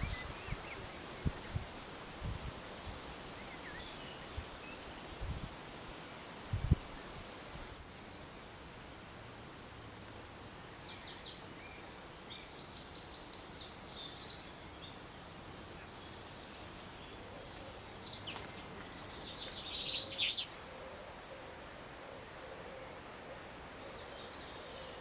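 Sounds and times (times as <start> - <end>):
faint background hiss: 0.0 - 25.0
songbirds singing high notes: 10.7 - 21.1.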